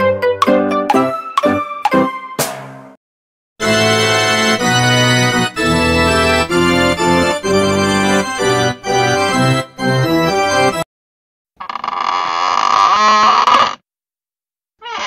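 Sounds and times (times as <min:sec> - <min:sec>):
organ-like keyboard chords: 0:03.6 - 0:10.8.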